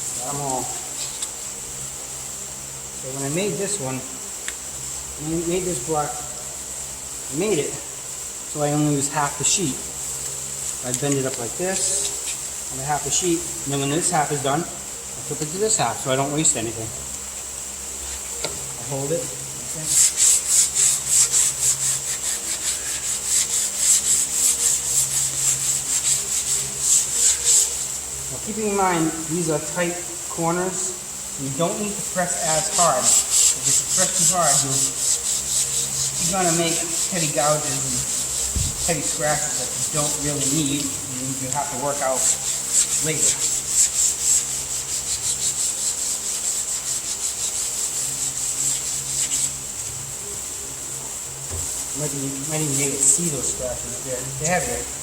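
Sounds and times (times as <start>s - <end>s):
sandpaper rubbing on metal panel: 10.6s - 14.7s, 18.9s - 50.2s, 51.5s - 55.0s.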